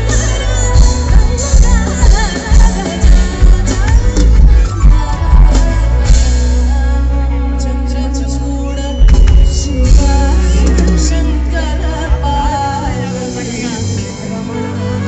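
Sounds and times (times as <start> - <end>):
loud music with singing: 0.0 - 15.0.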